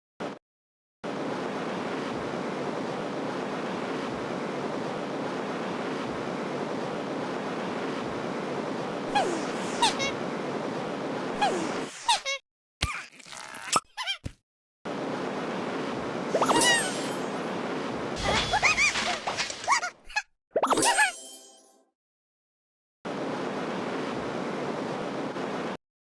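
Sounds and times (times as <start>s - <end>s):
sliding squeaky cries: 9.1s - 10.2s, 11.4s - 12.4s, 18.2s - 20.2s.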